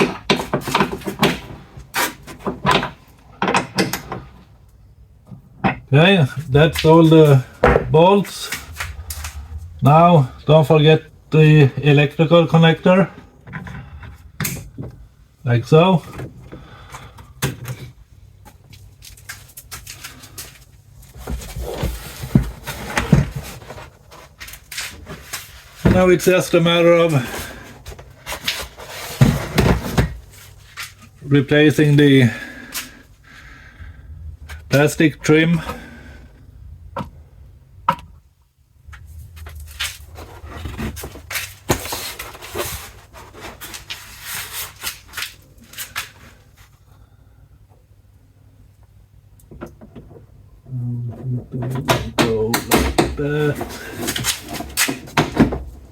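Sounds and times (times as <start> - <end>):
plastic rustling and scraping: 18.6 - 31.2, 38.8 - 46.8, 53.2 - 55.9.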